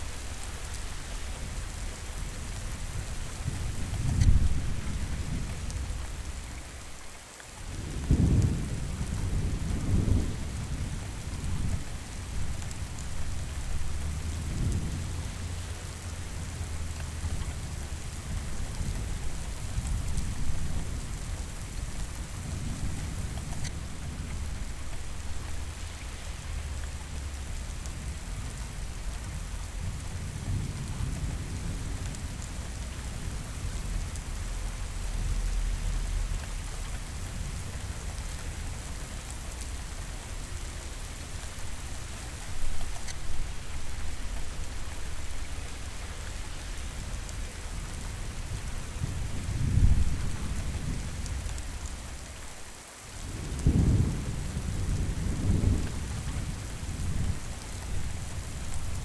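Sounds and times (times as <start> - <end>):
heavy rain: 0.0 - 59.0
thunder rumbling: 7.6 - 59.0
loud thunderclap: 53.2 - 57.4.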